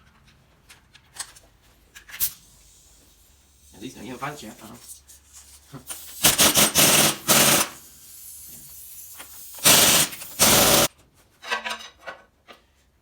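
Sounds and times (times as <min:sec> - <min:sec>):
impact wrench hammering: 0:05.9 - 0:07.8, 0:09.5 - 0:10.9.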